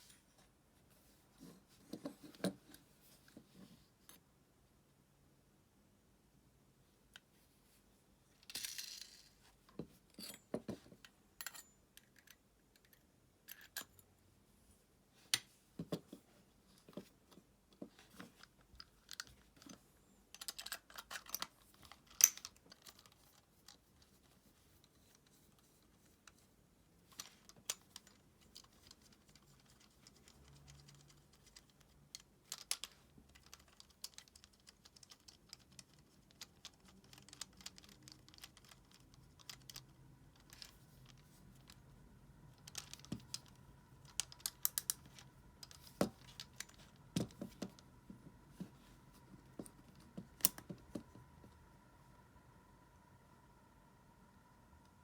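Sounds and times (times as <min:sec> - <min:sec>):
small metal parts clicking: 0:27.1 - 0:41.8, 0:42.5 - 0:46.9.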